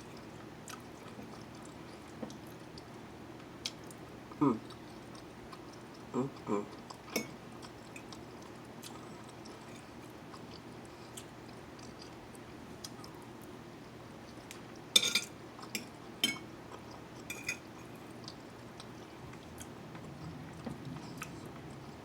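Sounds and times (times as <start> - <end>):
person chewing: 4.6 - 6.1, 6.7 - 13.3.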